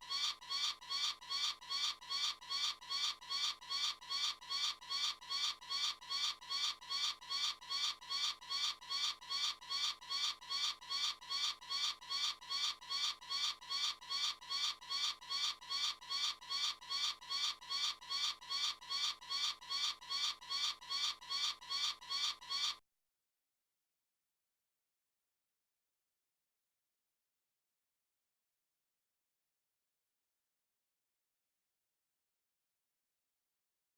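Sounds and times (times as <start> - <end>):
eagle calling high-pitched: 0.0 - 22.8.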